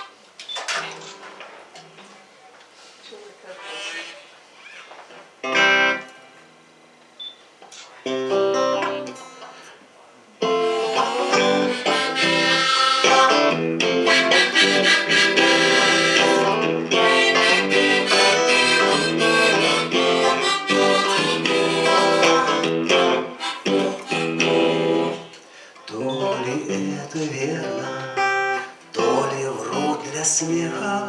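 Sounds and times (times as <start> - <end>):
lively live instrumental music: 10.5 - 25.4.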